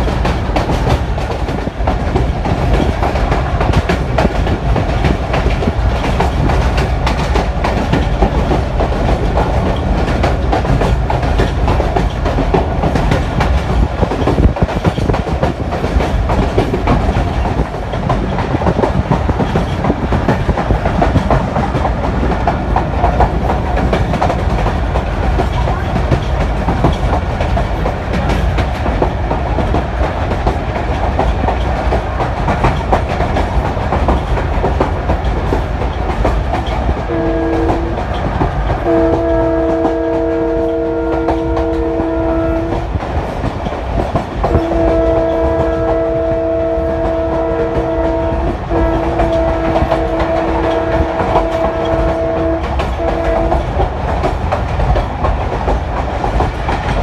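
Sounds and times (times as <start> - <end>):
train rumble: 0.0 - 57.0
wheels clacking on rail joints: 0.0 - 57.0.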